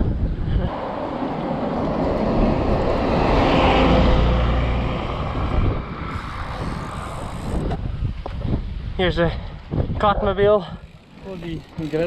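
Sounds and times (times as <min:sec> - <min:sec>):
wind rushing over microphone: 0:00.0 - 0:11.9
bike tyres rolling on dirt: 0:05.0 - 0:12.0.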